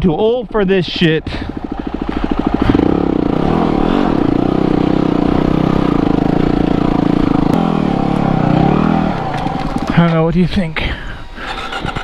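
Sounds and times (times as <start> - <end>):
motorcycle engine revving high: 0.8 - 10.1.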